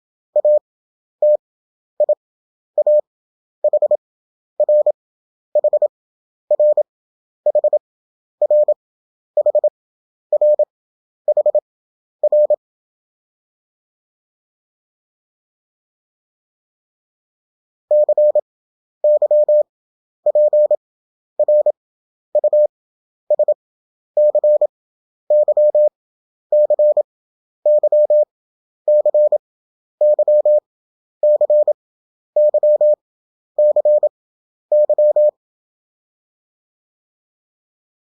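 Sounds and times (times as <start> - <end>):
morse code beeps: 0.4 - 0.6, 2.8 - 3.0, 3.6 - 4.0, 4.6 - 4.9, 5.6 - 5.9, 6.5 - 6.8, 7.5 - 7.8, 8.4 - 8.8, 9.4 - 9.7, 10.3 - 10.7, 11.3 - 11.6, 17.9 - 18.4, 19.0 - 19.7, 20.3 - 20.8, 21.4 - 21.8, 22.4 - 22.7, 23.3 - 23.6, 24.2 - 24.7, 25.3 - 25.9, 26.5 - 27.1, 27.7 - 28.3, 28.9 - 29.4, 30.0 - 30.6, 31.2 - 31.8, 32.4 - 33.0, 33.6 - 34.1, 34.7 - 35.4.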